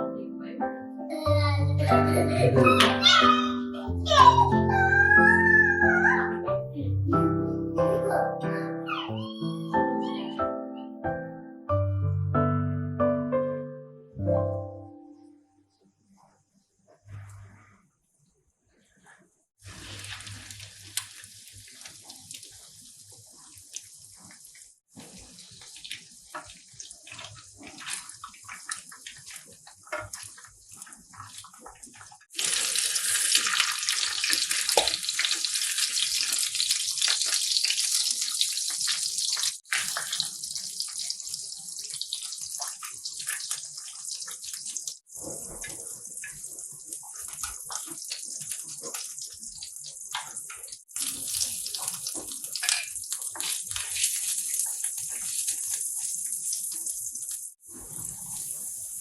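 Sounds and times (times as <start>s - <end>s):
water running from a tap: 1.9s - 6.2s, 19.6s - 59.0s.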